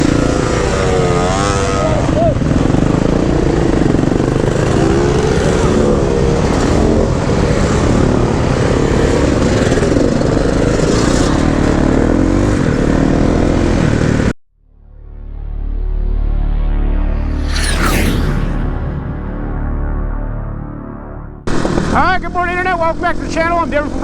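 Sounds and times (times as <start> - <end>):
dirt bike engine revving: 0.0 - 14.4, 21.4 - 24.0
steady rushing noise: 17.2 - 24.0.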